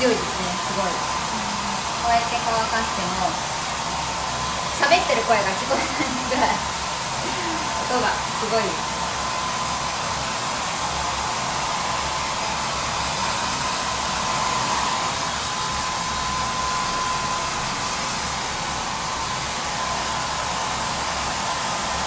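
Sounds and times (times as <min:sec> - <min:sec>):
hair dryer blowing air: 0:00.0 - 0:22.0.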